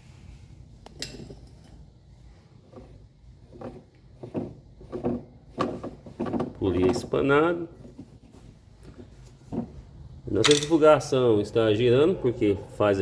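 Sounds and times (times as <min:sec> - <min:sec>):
machine parts clicking and knocking: 0:10.4 - 0:10.8.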